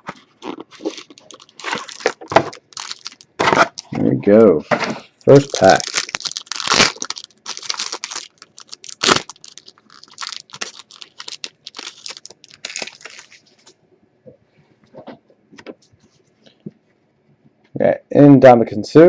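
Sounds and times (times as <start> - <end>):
foil wrapper tearing and crinkling: 0.4 - 3.9, 5.3 - 13.5.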